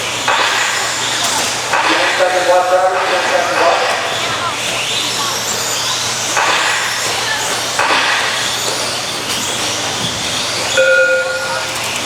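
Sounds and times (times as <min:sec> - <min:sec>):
electric toy truck motors whining: 0:04.0 - 0:12.0
steady electronic tone: 0:10.7 - 0:12.0.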